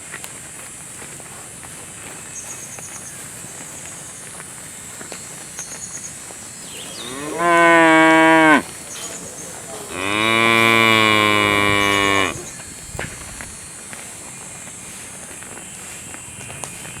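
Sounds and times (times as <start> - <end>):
cow mooing: 7.0 - 8.7, 9.9 - 12.6.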